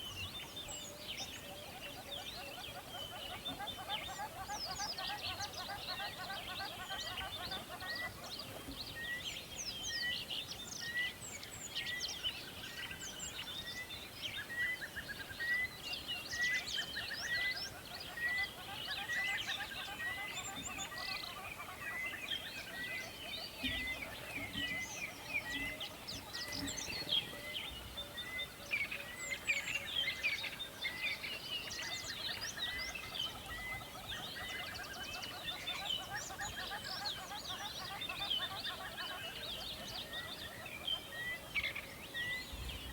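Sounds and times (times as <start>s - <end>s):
birds chirping and singing: 15.3s - 42.9s.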